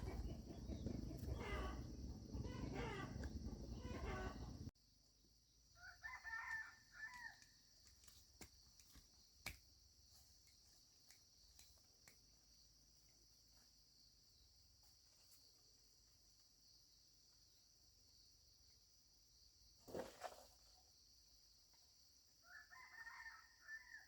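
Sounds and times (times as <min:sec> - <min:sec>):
rooster crowing: 0:05.8 - 0:07.4, 0:22.4 - 0:24.0.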